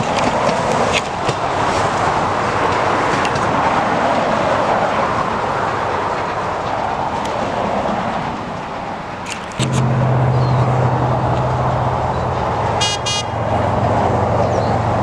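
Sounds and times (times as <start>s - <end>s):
train wheels rumbling on rail: 0.0s - 15.0s
sharp rail clicks: 6.4s - 15.0s.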